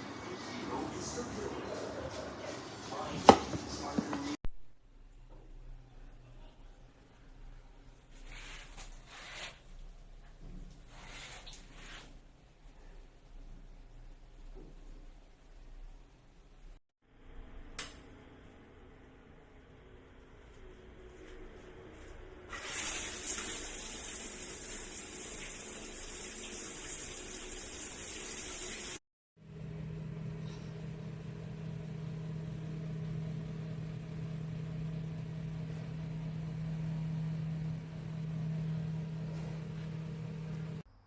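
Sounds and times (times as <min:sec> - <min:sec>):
steady low hum: 0:29.4 - 0:40.9.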